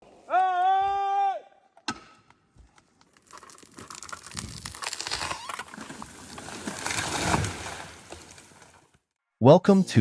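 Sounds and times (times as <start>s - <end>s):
wood cracking and splintering: 2.8s - 9.0s.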